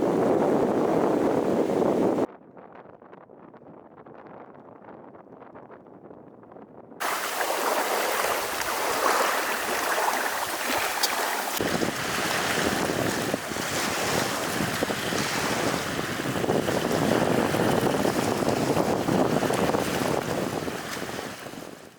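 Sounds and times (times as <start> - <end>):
wind buffeting microphone: 0.0 - 6.2, 7.0 - 21.9
low wind rumble: 0.0 - 21.9
lake water lapping: 7.0 - 21.9.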